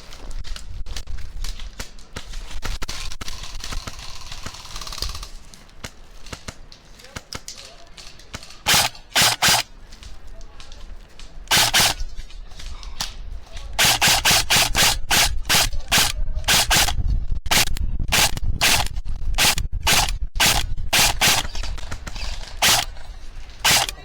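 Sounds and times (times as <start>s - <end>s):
faint airsoft shots: 8.3s - 9.8s, 11.5s - 12.2s, 13.8s - 23.0s, 23.6s - 24.0s
airsoft rifle bursts: 8.3s - 10.0s, 11.5s - 12.4s, 13.7s - 24.0s.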